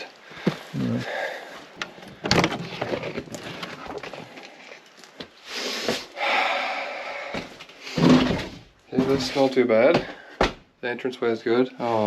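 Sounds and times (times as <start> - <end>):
old wood knocking and creaking: 1.7 - 4.5.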